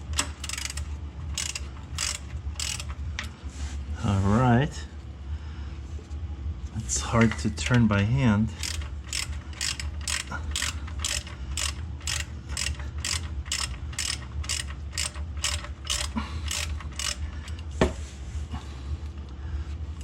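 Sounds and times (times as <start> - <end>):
ratchet wrench clicking: 0.0 - 3.3, 8.6 - 17.6.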